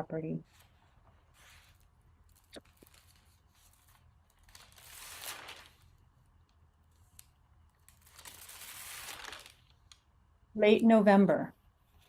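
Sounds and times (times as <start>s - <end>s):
book pages rustling: 0.5s - 6.0s, 6.9s - 10.0s.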